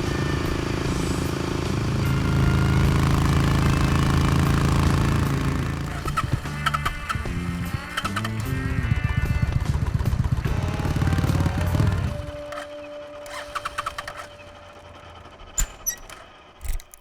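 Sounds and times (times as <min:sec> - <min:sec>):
motorcycle engine running: 0:00.0 - 0:17.0
sharp clicks: 0:15.6 - 0:17.0.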